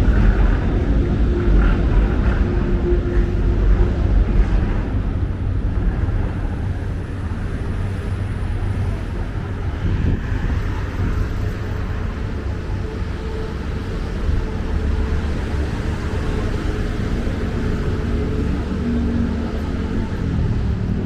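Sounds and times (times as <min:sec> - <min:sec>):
rumble of passing vehicles: 0:00.0 - 0:21.0.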